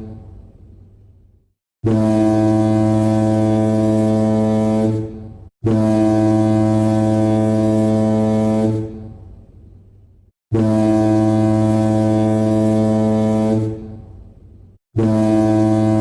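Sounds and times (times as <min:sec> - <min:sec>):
low horn-like alarm tone: 0:01.8 - 0:09.1, 0:10.5 - 0:14.0, 0:15.0 - 0:16.0.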